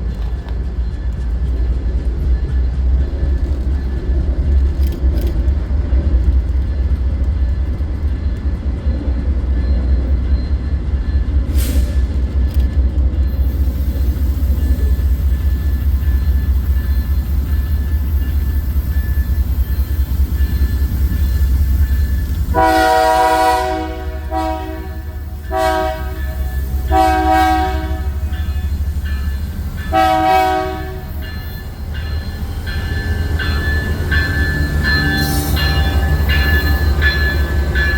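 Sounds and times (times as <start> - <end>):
freight locomotive rumbling past: 0.0 - 37.9
locomotive air horn blasts: 22.5 - 28.4, 29.9 - 31.2.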